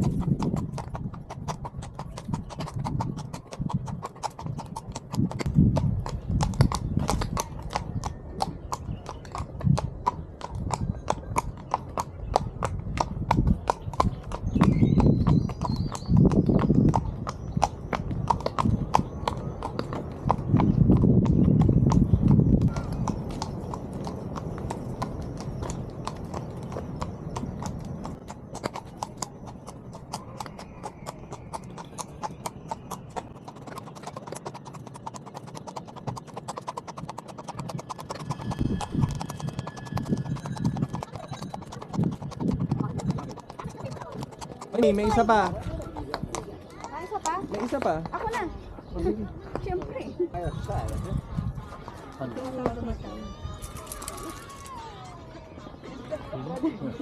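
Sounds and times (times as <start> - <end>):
horse hooves clip-clopping: 0.0 - 55.0.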